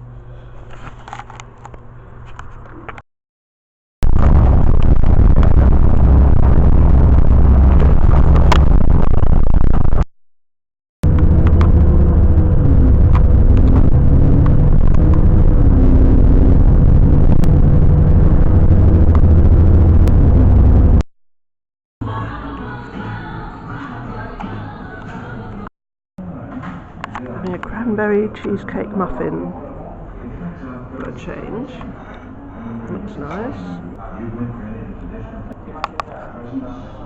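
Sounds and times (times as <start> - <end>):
steady hum: 4.0 - 10.1, 11.0 - 21.1
road traffic rumbling: 11.0 - 21.0.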